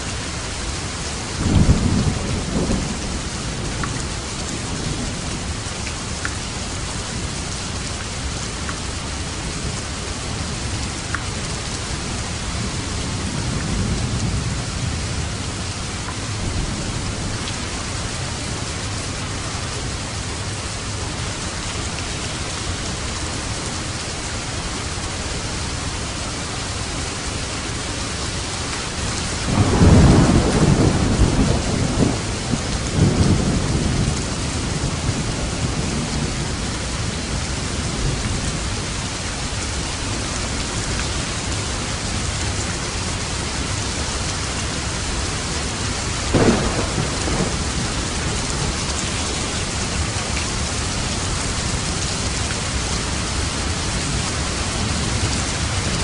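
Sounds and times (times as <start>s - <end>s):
heavy rain hiss: 0.0s - 56.0s
thunder rumbling: 1.4s - 5.6s, 29.1s - 38.6s, 45.1s - 56.0s
sharp thunder clap: 46.3s - 48.8s.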